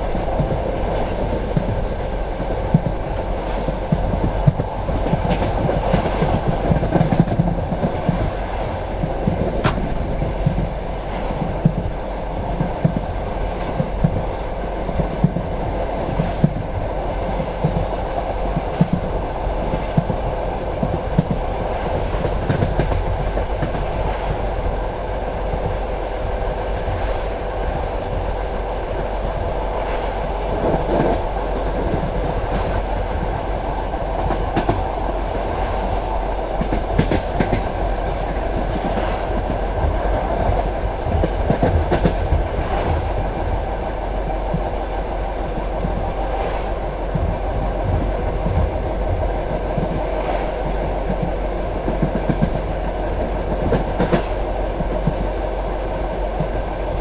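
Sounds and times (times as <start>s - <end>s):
train carriage rumble: 0.0s - 57.0s
wheels clicking over rail joints: 2.7s - 10.6s.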